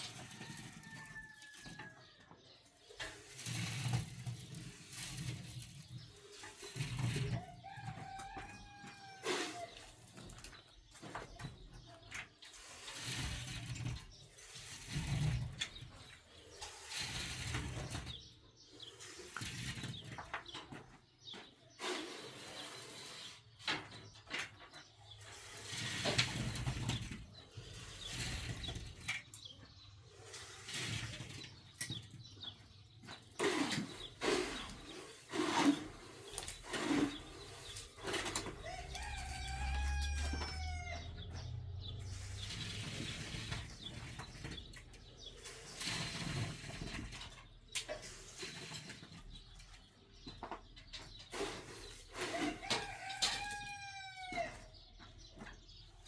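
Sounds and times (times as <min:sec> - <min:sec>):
rooster crowing: 0:00.3 - 0:02.0, 0:38.6 - 0:41.3.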